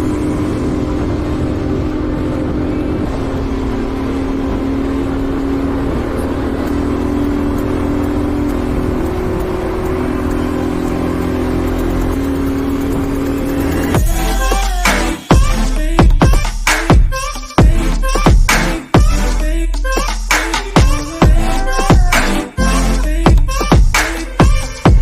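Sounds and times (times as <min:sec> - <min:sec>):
motorcycle engine running: 0:00.0 - 0:19.3.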